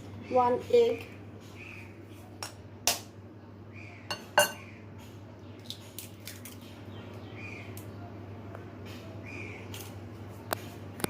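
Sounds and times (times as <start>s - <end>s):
utensils clinking against a bowl: 4.1s - 4.7s.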